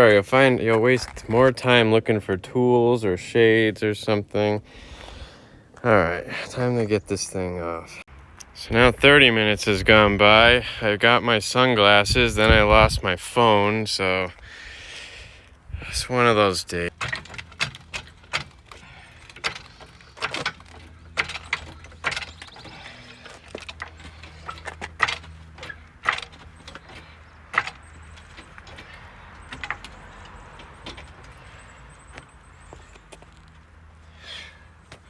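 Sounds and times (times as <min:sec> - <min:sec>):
hand tools clicking and knocking: 0:16.9 - 0:32.3.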